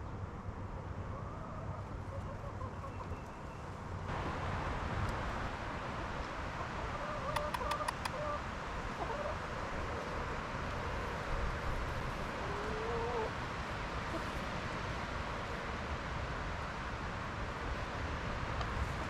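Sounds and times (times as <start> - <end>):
outdoor background hiss: 0.0 - 19.0
chickens clucking: 6.0 - 11.0, 12.3 - 13.3
quick clicks: 7.3 - 8.2.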